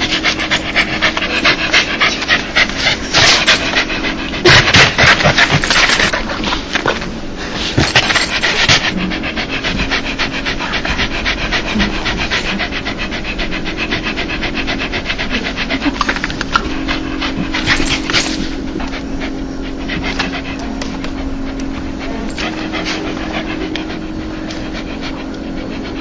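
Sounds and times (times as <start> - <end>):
dog panting rapidly: 0.0 - 26.0.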